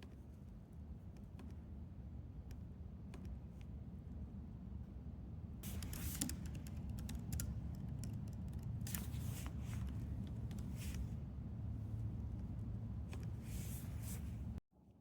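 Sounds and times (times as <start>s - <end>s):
low steady hum: 0.0s - 15.0s
rustling swishes: 13.2s - 14.6s.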